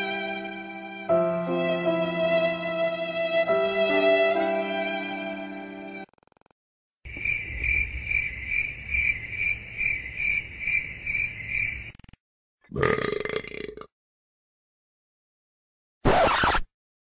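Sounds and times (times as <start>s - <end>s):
crickets chirping: 7.1s - 12.1s.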